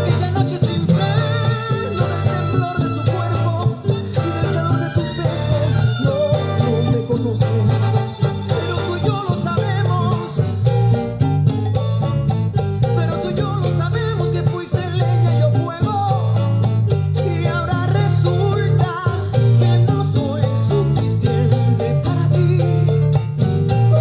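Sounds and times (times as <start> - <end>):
pulsing bass line: 0.0 - 24.0
salsa song: 0.0 - 24.0.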